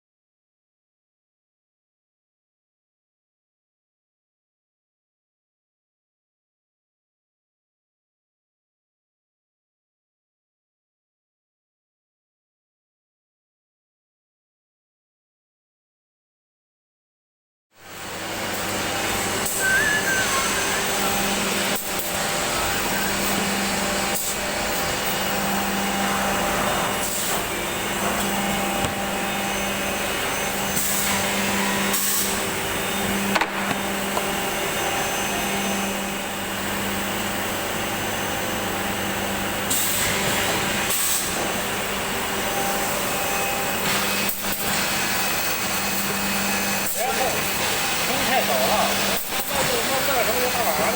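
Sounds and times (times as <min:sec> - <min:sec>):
machine hisses: 0:19.2 - 0:23.4.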